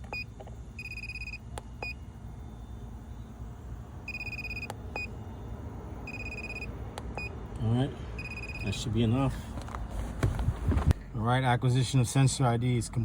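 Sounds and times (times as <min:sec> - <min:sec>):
low steady hum: 0:00.0 - 0:13.0
high electronic beeps: 0:00.1 - 0:02.0, 0:04.1 - 0:05.1, 0:06.0 - 0:07.3, 0:08.2 - 0:08.8.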